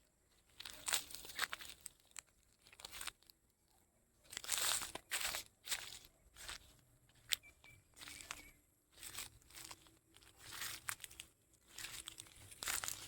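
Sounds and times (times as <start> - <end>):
goat chewing plants: 4.3 - 13.0.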